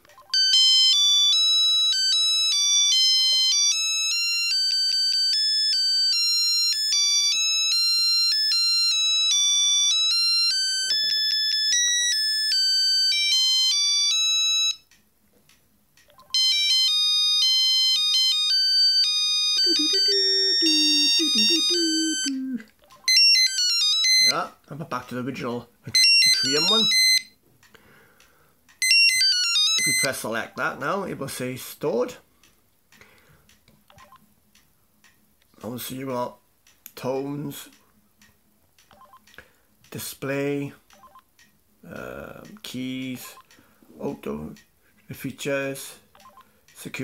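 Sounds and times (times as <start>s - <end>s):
phone ringtone beeping melody: 0.1s - 14.9s, 16.1s - 24.4s, 26.0s - 27.4s, 28.8s - 30.1s.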